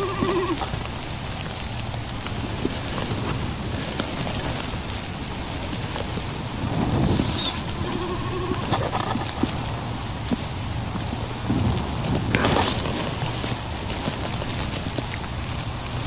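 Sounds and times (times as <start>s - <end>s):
rain on a tent: 0.0s - 16.0s.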